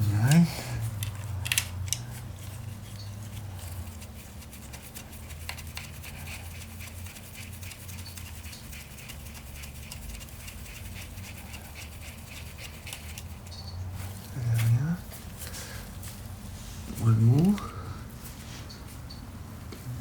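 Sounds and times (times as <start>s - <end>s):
metal clicks: 0.3s - 2.2s.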